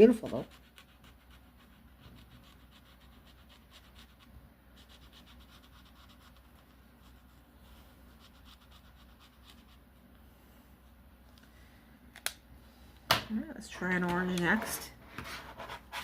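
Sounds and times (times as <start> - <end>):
marker scratching on paper: 0.0 - 9.8.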